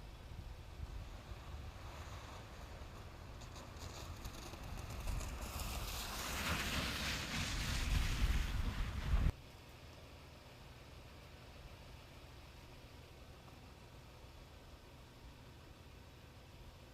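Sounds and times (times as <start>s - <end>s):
car road rumble: 0.0s - 9.4s
tyre and wind hiss: 0.0s - 9.4s.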